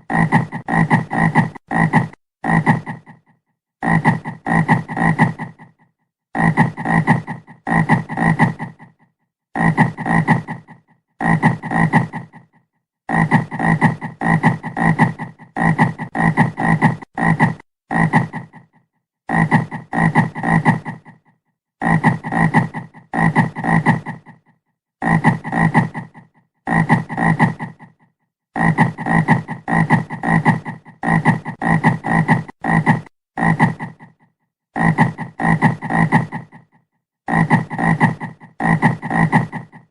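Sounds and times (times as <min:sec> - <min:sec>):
frog croaking: 0:00.0 - 0:05.8.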